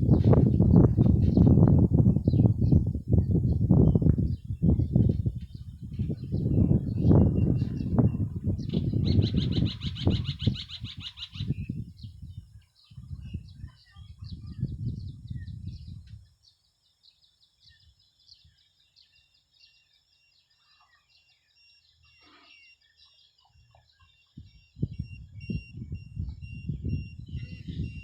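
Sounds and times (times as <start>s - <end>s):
wind buffeting microphone: 0.0s - 16.5s, 24.3s - 28.0s
faint bird chirps: 0.0s - 28.0s.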